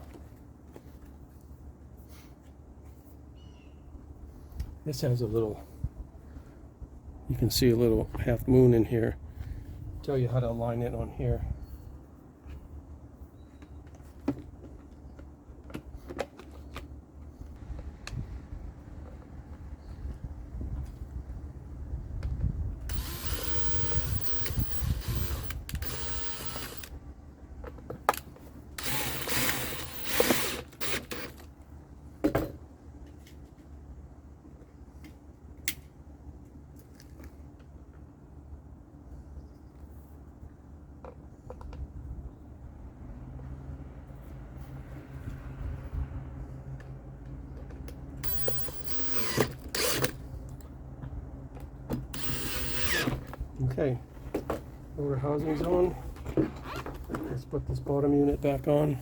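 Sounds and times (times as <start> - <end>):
power screwdriver running: 22.9 - 27.0, 28.8 - 31.5, 48.2 - 50.3, 52.1 - 53.3.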